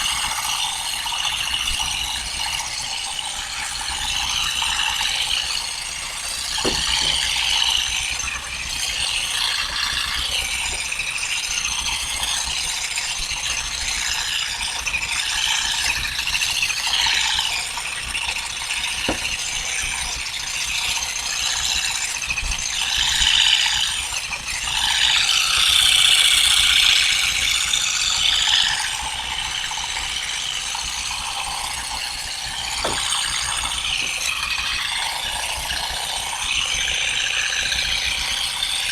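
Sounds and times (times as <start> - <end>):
olive harvesting rattling and clicking: 3.8 - 13.9, 15.5 - 21.8, 30.2 - 38.0
loud knocks: 6.4 - 8.0, 19.0 - 19.7, 32.8 - 34.6.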